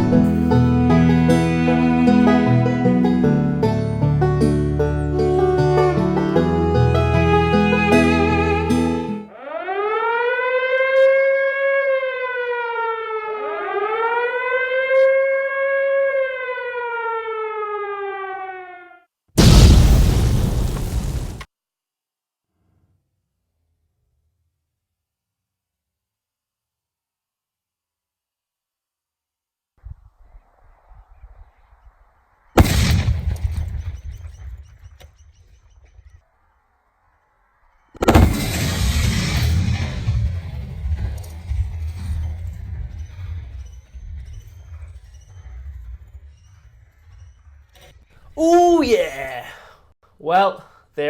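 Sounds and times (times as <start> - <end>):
air-raid siren wailing: 0.0 - 3.6, 4.9 - 19.0
faint outdoor background: 0.0 - 51.0
loud explosion: 19.4 - 21.5, 32.6 - 34.4, 38.0 - 45.4
sharp cracks: 19.4 - 21.5, 32.6 - 36.1, 38.0 - 47.9.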